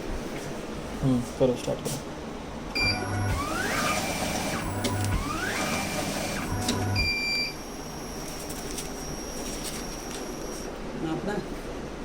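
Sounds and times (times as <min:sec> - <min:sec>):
machine hum: 0:02.4 - 0:11.0
tape machine feed motor whine: 0:02.8 - 0:10.7
short beep: 0:07.0 - 0:08.3.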